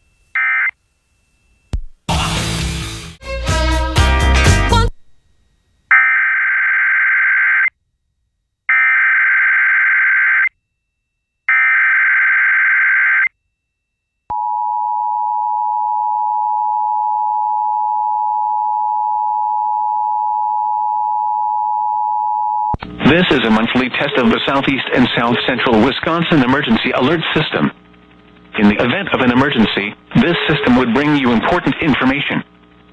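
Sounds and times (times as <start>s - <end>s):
digital data tone bursts: 30.2s - 31.3s.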